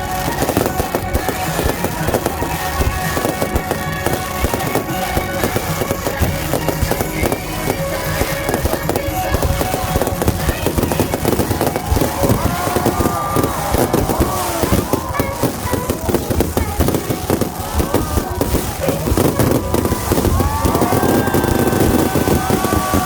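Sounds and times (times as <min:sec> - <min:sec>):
fireworks bangs and crackling: 0:00.0 - 0:23.0
music playing: 0:00.0 - 0:23.0.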